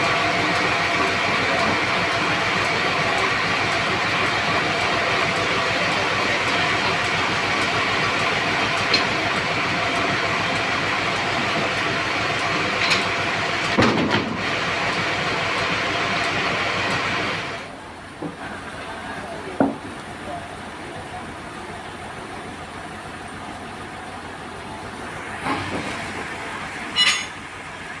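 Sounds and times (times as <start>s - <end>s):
sawmill saw cutting log: 0.0s - 17.6s, 25.1s - 27.4s.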